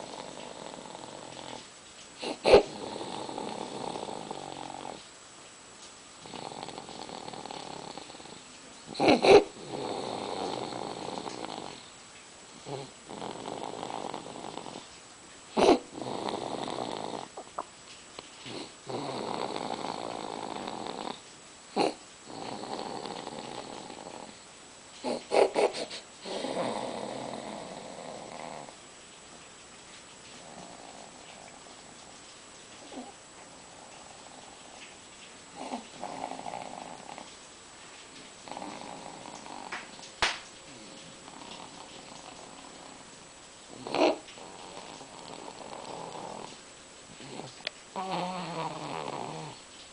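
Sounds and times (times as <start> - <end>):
baby snorting: 0.0 - 5.0, 8.9 - 11.8, 15.6 - 17.4, 21.8 - 24.4, 25.0 - 28.8
baby snoring: 2.2 - 5.0, 6.2 - 8.4, 9.0 - 11.9, 12.6 - 14.9, 15.6 - 17.4, 18.5 - 21.2, 21.8 - 24.4, 25.0 - 28.8, 43.8 - 46.5, 47.2 - 49.6.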